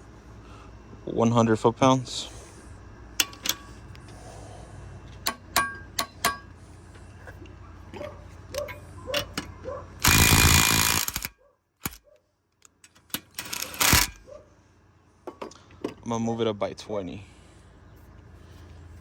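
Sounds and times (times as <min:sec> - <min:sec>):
tool handling clicks and knocks: 0:03.2 - 0:04.1, 0:05.1 - 0:09.8, 0:15.2 - 0:16.1
impact driver hammering: 0:10.0 - 0:12.0, 0:13.4 - 0:14.2.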